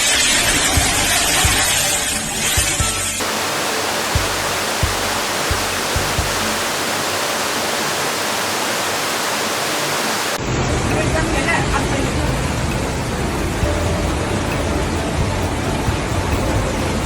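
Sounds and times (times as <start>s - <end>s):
background music thumps: 2.8s - 8.1s
floodwater rushing: 3.2s - 10.6s.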